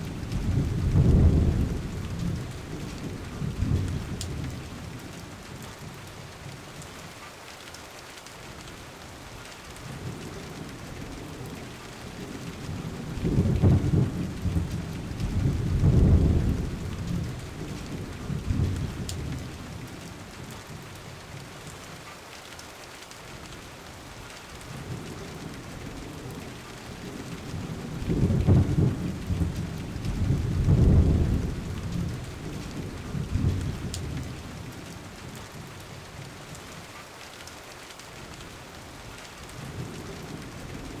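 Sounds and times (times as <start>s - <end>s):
low rolls of thunder: 0.0s - 6.0s, 9.8s - 20.8s, 24.6s - 35.8s, 39.5s - 41.0s
steady rain: 0.0s - 41.0s.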